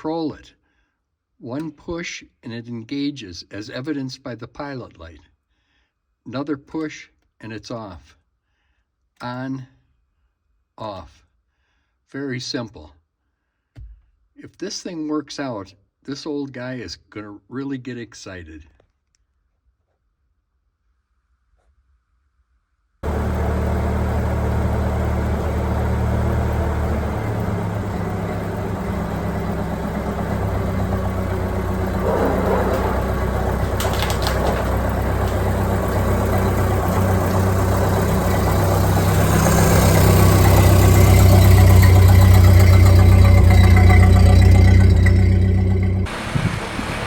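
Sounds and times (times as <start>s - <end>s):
car engine running: 23.0s - 47.0s
short clatter: 23.0s - 47.0s.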